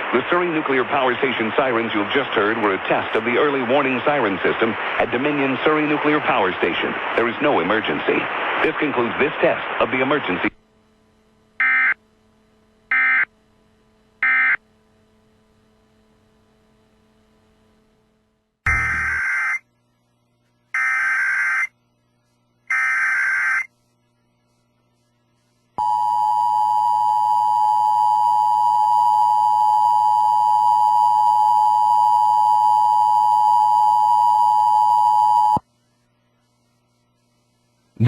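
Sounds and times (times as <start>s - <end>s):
buzzing digital data bursts: 18.7s - 19.6s.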